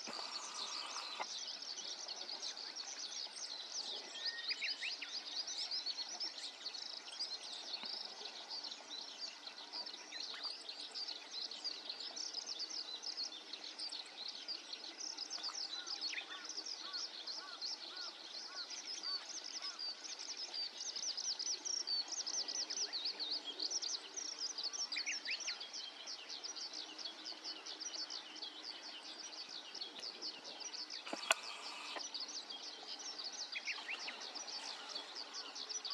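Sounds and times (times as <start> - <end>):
background hiss: 0.0 - 9.6, 20.0 - 35.9
small birds chirping: 0.0 - 35.9
sharp click: 31.1 - 32.0.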